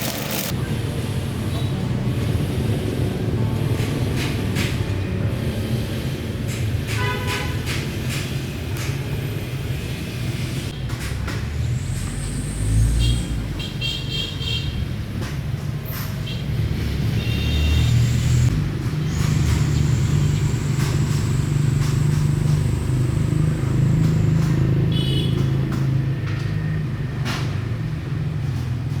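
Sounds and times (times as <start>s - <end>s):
string trimmer engine running: 0.0s - 0.6s.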